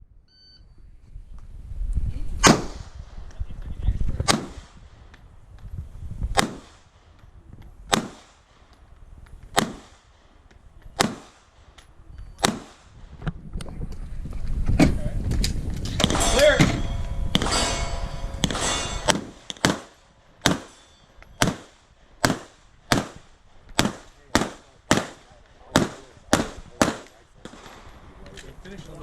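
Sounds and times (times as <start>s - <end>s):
pistol shots: 2.4s - 2.9s, 4.2s - 4.8s, 6.3s - 6.9s, 7.9s - 8.6s, 9.5s - 10.1s, 11.0s - 11.5s, 12.4s - 12.9s, 18.4s - 28.0s
low rumble: 11.6s - 20.5s.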